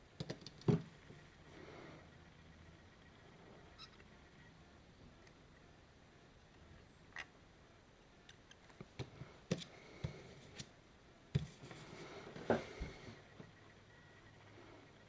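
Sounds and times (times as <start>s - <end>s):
plastic parts clicking and tapping: 0.2s - 0.9s.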